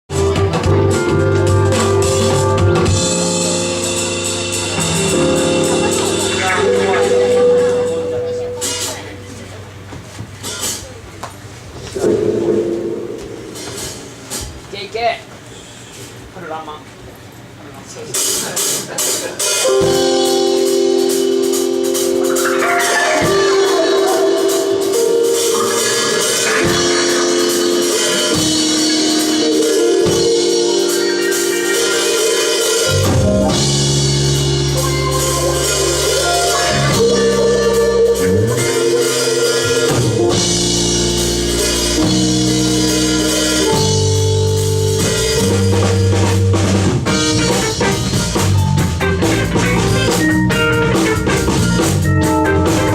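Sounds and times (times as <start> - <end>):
bass line: 0.1 - 9.9, 19.8 - 52.9
drum kit with cymbal hits: 0.1 - 52.9
sustained held chords: 12.0 - 14.4, 19.7 - 52.9.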